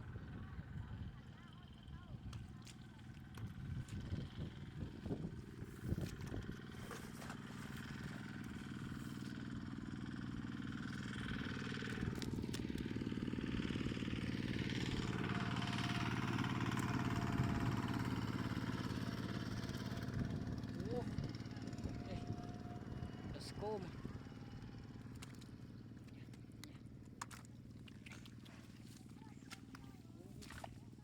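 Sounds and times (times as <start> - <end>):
tractor engine running: 0.9 - 31.0.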